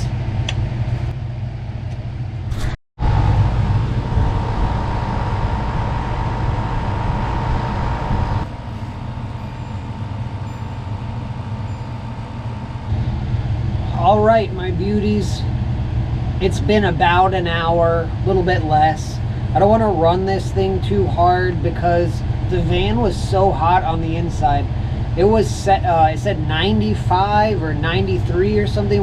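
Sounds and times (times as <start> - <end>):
air conditioner hum: 0.0 - 29.0
steady high whine: 0.0 - 29.0.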